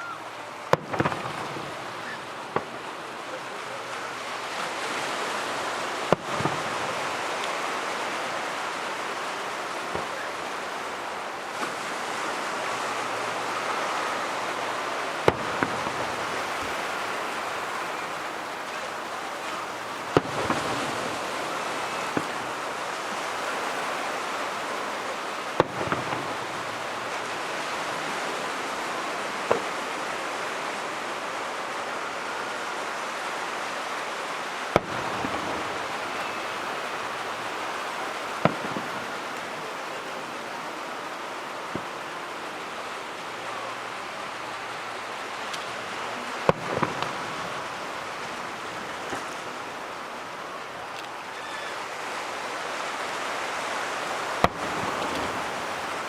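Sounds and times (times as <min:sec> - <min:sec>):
fireworks bangs: 0:00.0 - 0:03.0, 0:03.7 - 0:29.9, 0:34.7 - 0:42.3, 0:45.4 - 0:49.8, 0:54.2 - 0:56.0
small fireworks pops: 0:00.0 - 0:03.0, 0:06.1 - 0:07.7, 0:09.9 - 0:10.8, 0:13.4 - 0:27.3, 0:29.4 - 0:29.8, 0:34.7 - 0:39.8, 0:41.7 - 0:42.0, 0:45.4 - 0:49.6, 0:54.3 - 0:56.0.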